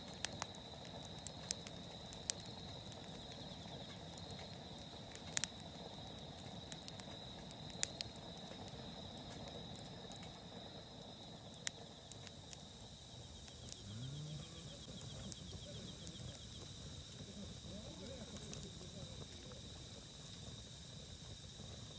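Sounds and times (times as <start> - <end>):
campfire crackling: 0.0 - 21.9
faint steady hiss: 0.0 - 21.9.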